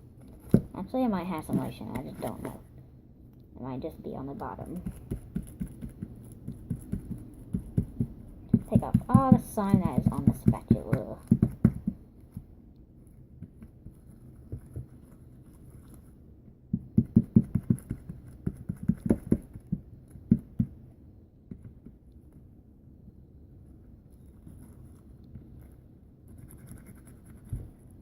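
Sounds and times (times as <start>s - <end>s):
spatula tapping and scraping bowl: 4.5s - 12.0s.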